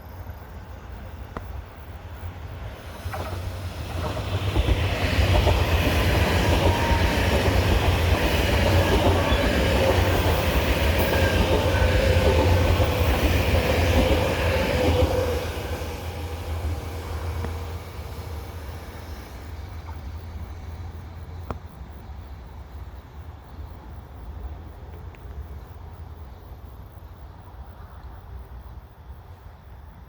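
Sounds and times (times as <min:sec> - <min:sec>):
electric train rumble: 0:00.5 - 0:21.4.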